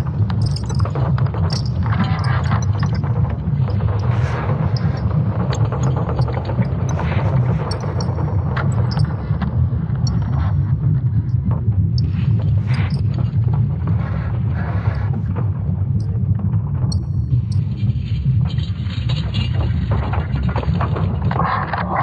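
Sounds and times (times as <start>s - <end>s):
scraping and crackling: 0.0s - 9.2s
deep continuous rumble: 0.0s - 22.0s.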